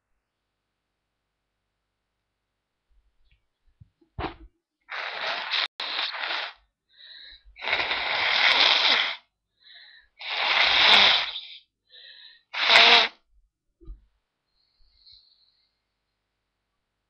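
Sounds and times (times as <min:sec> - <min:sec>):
faint quick breaths: 0:06.1 - 0:07.6, 0:09.5 - 0:10.2, 0:11.3 - 0:12.6, 0:14.4 - 0:16.3
person sneezing: 0:10.2 - 0:11.6, 0:12.6 - 0:13.2.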